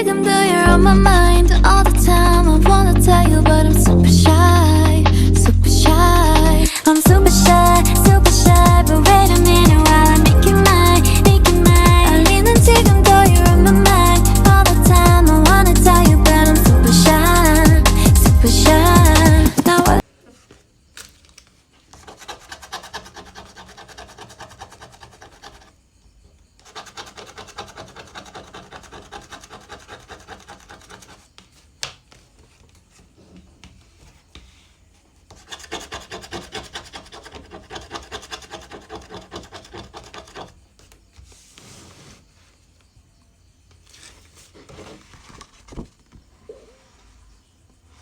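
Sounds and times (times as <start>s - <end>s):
background music: 0.0s - 20.0s
rhythmic rubbing: 0.6s - 20.0s.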